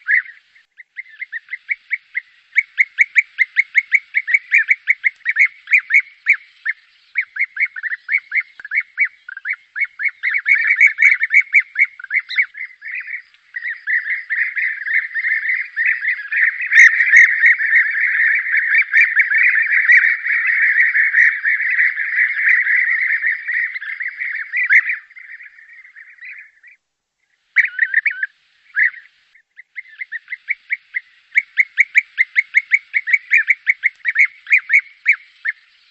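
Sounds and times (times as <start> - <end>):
flock of birds calling: 0.0 - 35.9.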